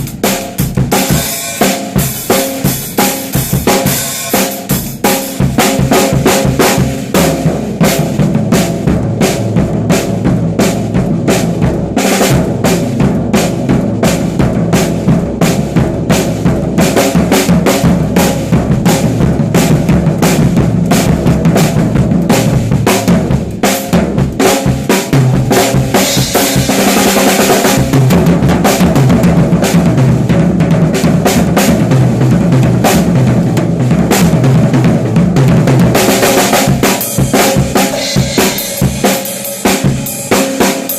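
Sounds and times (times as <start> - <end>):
band music: 0.0 - 5.5, 24.3 - 29.2, 35.6 - 40.9
rapid drum hits: 0.0 - 40.9
cymbal wash: 37.0 - 40.9.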